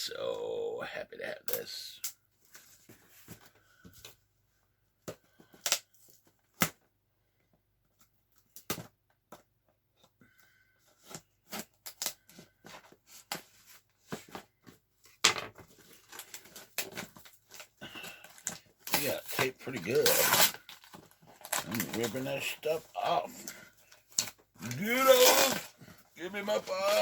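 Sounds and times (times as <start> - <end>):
packing tape tearing: 11.4 - 12.3, 18.3 - 22.6, 23.4 - 25.8.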